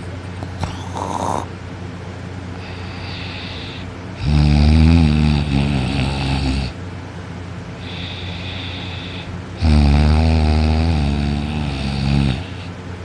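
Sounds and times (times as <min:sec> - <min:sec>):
loud snoring: 0:00.6 - 0:01.5, 0:02.6 - 0:06.8, 0:07.8 - 0:12.7.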